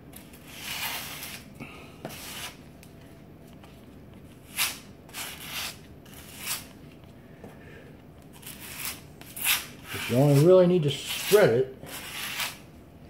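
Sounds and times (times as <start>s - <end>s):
spatula scraping grout on tile: 0.2s - 1.4s, 2.0s - 2.6s, 4.4s - 6.8s, 8.4s - 12.6s.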